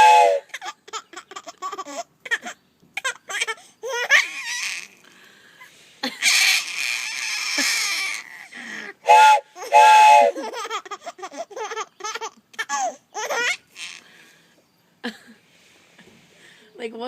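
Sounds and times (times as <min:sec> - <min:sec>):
train whistle tooting: 0:00.0 - 0:00.5, 0:09.1 - 0:10.4
baby giggling: 0:00.5 - 0:04.4, 0:10.4 - 0:13.6.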